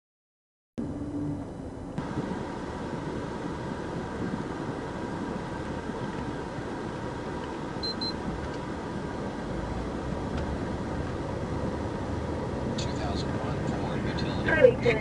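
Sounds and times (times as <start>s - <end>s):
car engine and tyre rumble: 0.8s - 15.0s
short high beeps: 7.8s - 8.2s.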